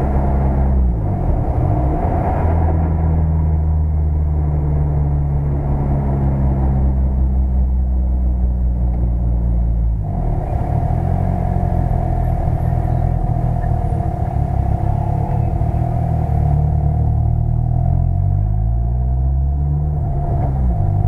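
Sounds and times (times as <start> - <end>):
turbocharged car engine running: 0.0 - 21.0
high-pitched whine: 11.5 - 18.6.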